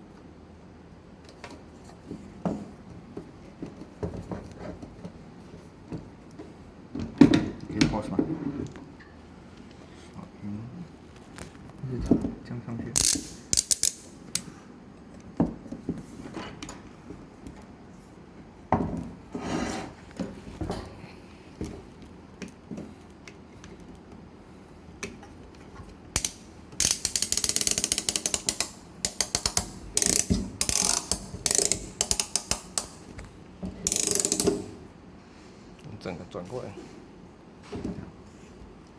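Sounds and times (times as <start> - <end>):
rapid ratchet clicks: 13.0 - 14.5, 26.2 - 33.1, 33.9 - 34.8.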